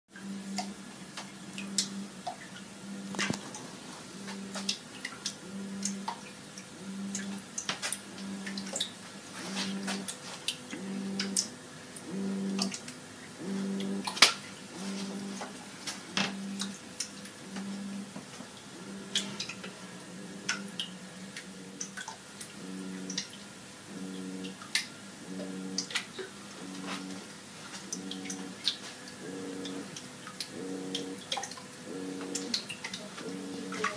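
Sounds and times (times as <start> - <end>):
wave pump motor humming in pulses: 0.1 - 33.9
water splashing and dripping: 4.2 - 13.0, 20.4 - 23.5, 27.8 - 33.9
sharp irregular clicks: 4.3 - 6.2, 7.0 - 8.9, 10.7 - 14.3, 20.3 - 23.4, 27.9 - 33.9.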